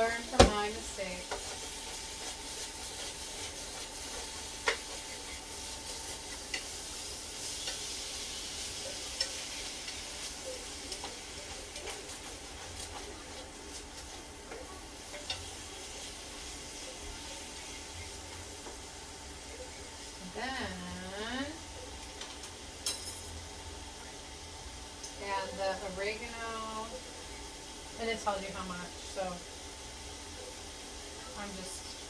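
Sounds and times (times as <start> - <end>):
vegetables sizzling in a frying pan: 0.0 - 32.0
utensil clicking against a pan: 10.9 - 12.2.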